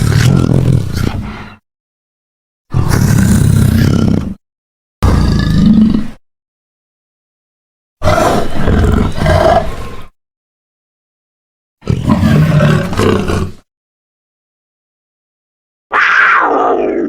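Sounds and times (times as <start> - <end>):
puma growling roars: 0.0 - 1.6, 2.7 - 4.4, 5.0 - 6.2, 8.0 - 10.1, 11.8 - 13.6.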